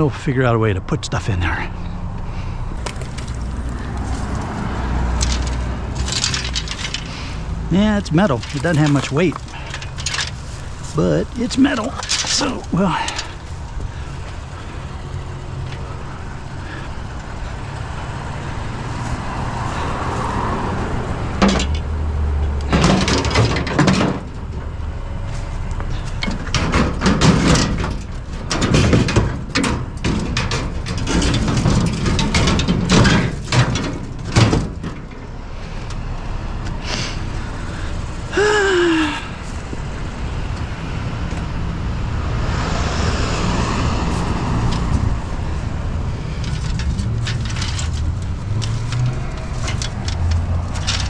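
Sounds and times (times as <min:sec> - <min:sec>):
low vehicle engine hum: 0:00.0 - 0:51.0
scrap metal clattering: 0:02.7 - 0:20.5, 0:21.3 - 0:21.9, 0:22.6 - 0:35.8, 0:43.8 - 0:51.0.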